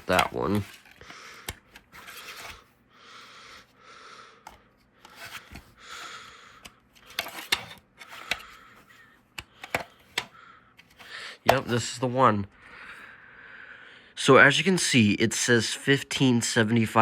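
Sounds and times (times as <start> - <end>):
packaging rustling: 0.0 - 2.7, 6.8 - 8.8.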